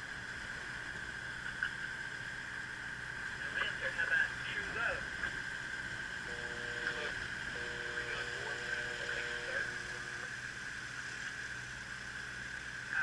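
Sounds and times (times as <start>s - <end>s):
boat background noise: 0.0s - 13.0s
faint steady tone: 0.0s - 13.0s.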